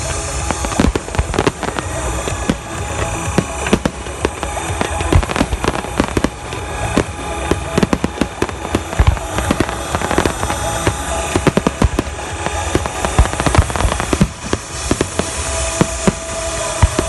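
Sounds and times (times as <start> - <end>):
fireworks bangs: 0.0 - 17.0
music on loudspeakers: 0.0 - 17.0.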